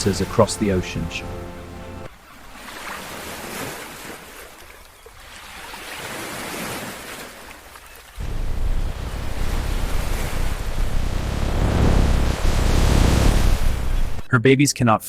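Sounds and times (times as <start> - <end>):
ocean waves washing: 0.0 - 4.0, 8.2 - 14.3
wind: 0.0 - 14.3
deep rumble: 8.2 - 14.3.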